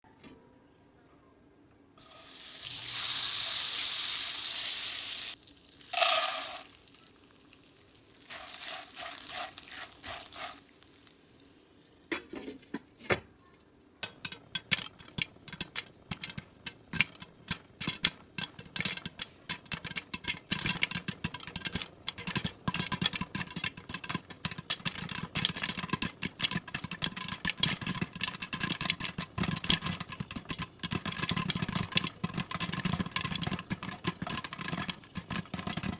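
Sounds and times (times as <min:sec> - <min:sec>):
utensil stirring in a bowl: 0:08.2 - 0:11.2, 0:14.0 - 0:35.9.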